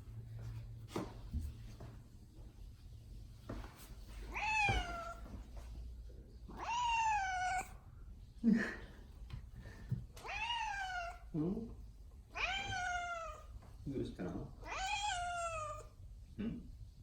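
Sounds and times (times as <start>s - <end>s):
cat meowing: 4.3s - 5.2s, 6.5s - 7.8s, 10.2s - 11.3s, 12.3s - 13.5s, 14.6s - 15.9s.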